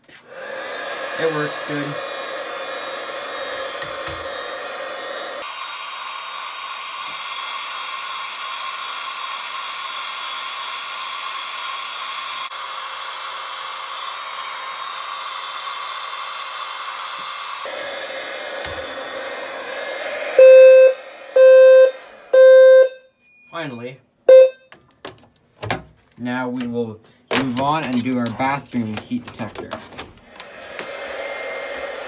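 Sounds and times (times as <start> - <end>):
heat gun blowing: 0.0 - 22.9, 30.2 - 32.0
fire alarm horn beeping: 20.4 - 23.1, 24.3 - 24.7.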